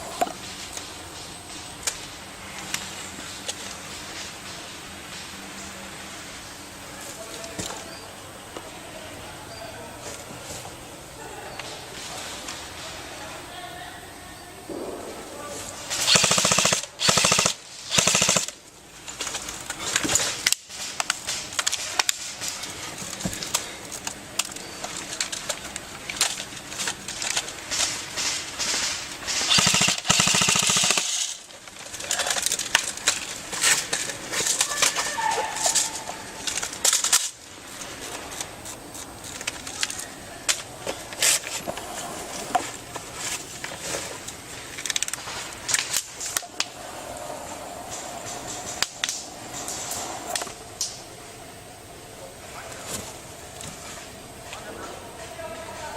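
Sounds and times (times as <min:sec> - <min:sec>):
airsoft guns firing: 0:14.7 - 0:18.7, 0:27.2 - 0:31.5.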